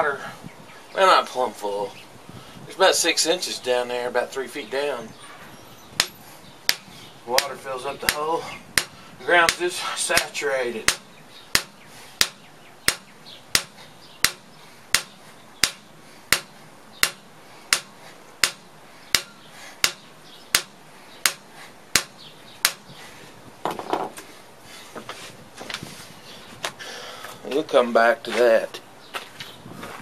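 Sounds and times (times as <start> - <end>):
hammer striking steel rod: 6.0 - 7.5, 8.8 - 9.6, 10.2 - 22.8.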